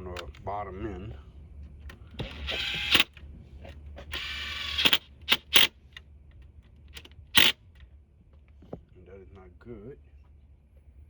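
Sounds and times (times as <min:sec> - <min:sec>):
ratchet wrench ratcheting: 0:02.2 - 0:03.2, 0:04.2 - 0:05.7, 0:07.0 - 0:07.6.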